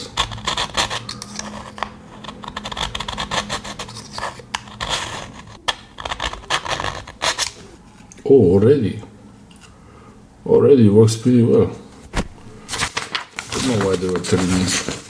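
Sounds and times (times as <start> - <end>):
knife scraping through sharpener: 0.0 - 7.6.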